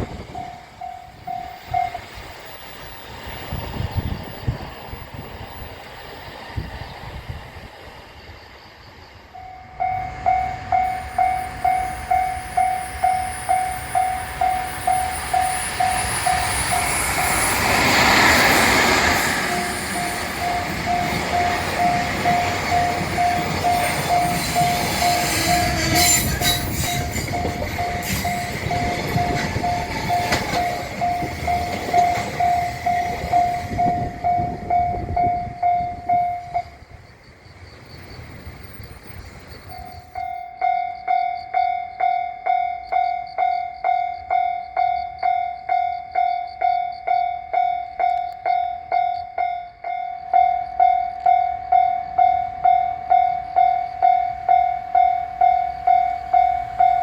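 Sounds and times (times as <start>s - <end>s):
train passing: 0.0s - 57.0s
level crossing bell clanging: 0.3s - 2.1s, 19.1s - 36.7s.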